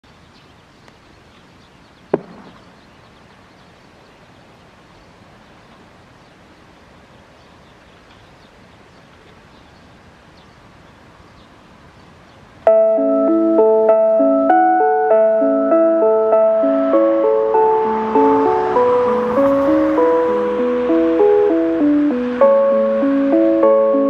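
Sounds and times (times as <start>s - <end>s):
electronic chime melody: 12.7s - 24.0s.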